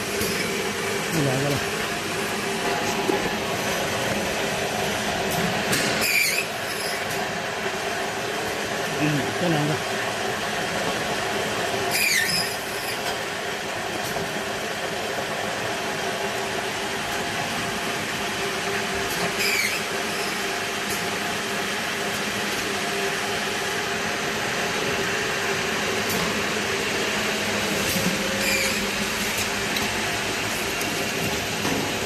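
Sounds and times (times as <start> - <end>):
baking machine humming and whirring: 0.0 - 32.0
short high squeaks: 6.0 - 7.0, 11.9 - 13.0, 19.4 - 19.8, 28.4 - 28.9.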